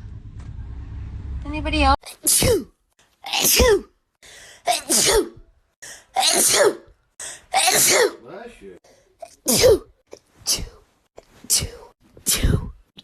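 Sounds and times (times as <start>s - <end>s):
short breaths drawn: 4.2s - 4.7s
woman sneezing: 4.7s - 5.4s, 6.2s - 6.8s, 7.6s - 8.2s, 9.4s - 9.9s.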